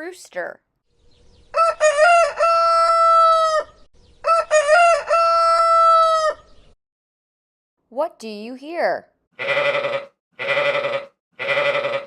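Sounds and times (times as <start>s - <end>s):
rooster crowing: 1.5s - 6.5s, 9.4s - 12.0s.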